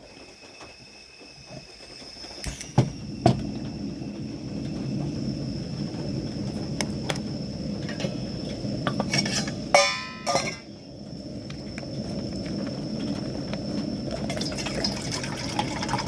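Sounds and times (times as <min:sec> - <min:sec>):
heavy rain: 0:03.0 - 0:16.0
metal cookware clanking: 0:08.9 - 0:10.7.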